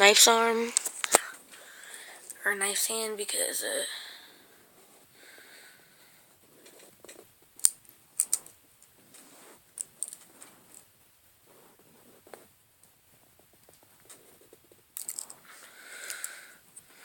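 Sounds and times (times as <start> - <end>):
soft rubbing and fumbling: 4.4 - 5.2, 6.0 - 7.6, 8.2 - 15.8.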